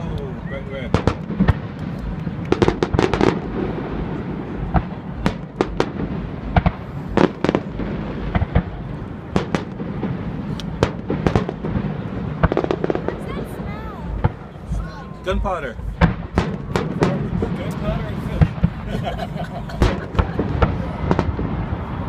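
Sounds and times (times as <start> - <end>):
fireworks cracks and bangs: 0.7 - 22.0
low rumble: 0.9 - 22.0.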